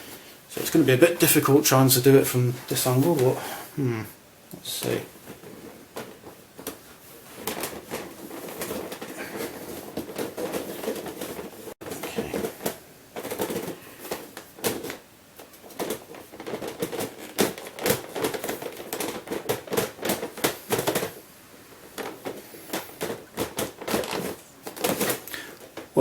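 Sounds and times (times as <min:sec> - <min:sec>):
plastic puzzle pieces clacking: 0:07.4 - 0:21.2, 0:21.9 - 0:25.9.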